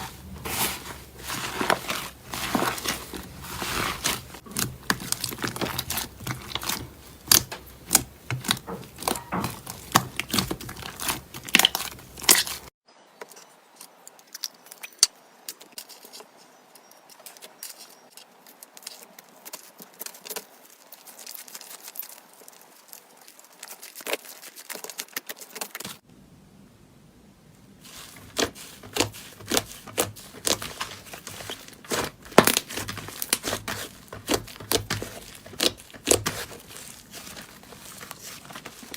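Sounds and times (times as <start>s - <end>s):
slime squished crackling and popping: 0.0s - 12.7s, 27.9s - 38.9s.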